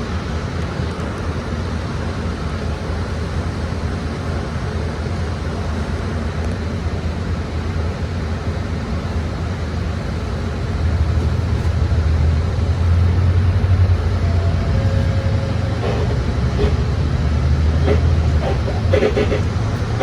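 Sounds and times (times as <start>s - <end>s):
bus engine and road drone: 0.0s - 20.0s.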